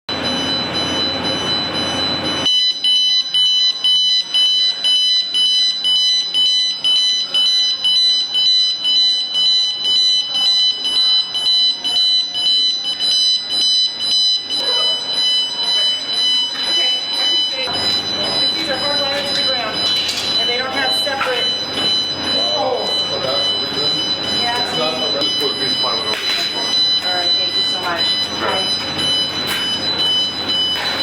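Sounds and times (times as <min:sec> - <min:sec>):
fire alarm pulsing tone: 0:00.1 - 0:31.0.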